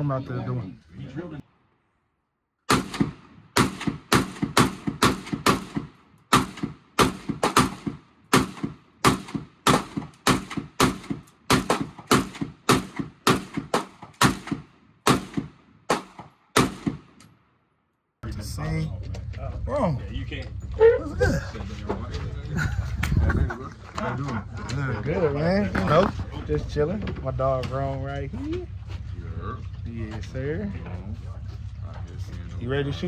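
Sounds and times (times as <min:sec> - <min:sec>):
rapid gunshots: 0:02.7 - 0:17.2.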